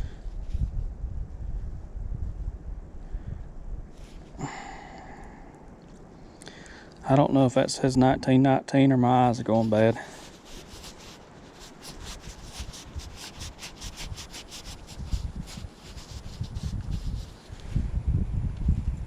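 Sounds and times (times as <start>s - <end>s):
fingers rubbing a coin: 10.2s - 17.5s.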